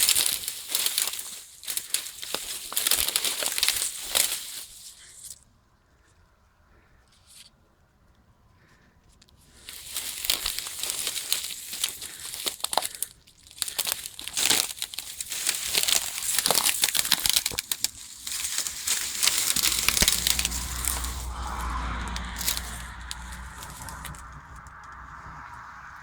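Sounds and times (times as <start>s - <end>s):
rustling and crackling: 0.0s - 5.4s, 9.1s - 26.0s
low rumble: 18.2s - 26.0s.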